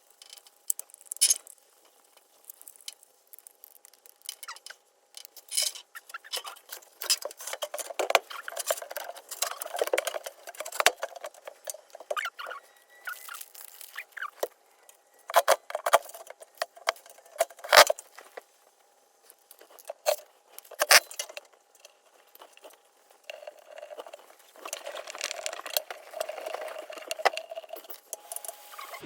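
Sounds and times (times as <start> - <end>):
hard objects clicking and knocking: 2.6 - 12.6.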